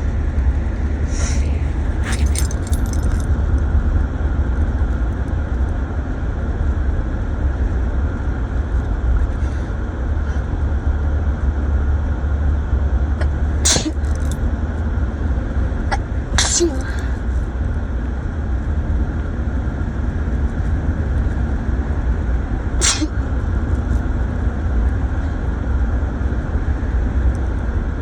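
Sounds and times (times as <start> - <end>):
car cabin road rumble: 0.0 - 6.1, 13.0 - 14.6
brief clicks and rattles: 2.0 - 3.3, 13.7 - 14.4.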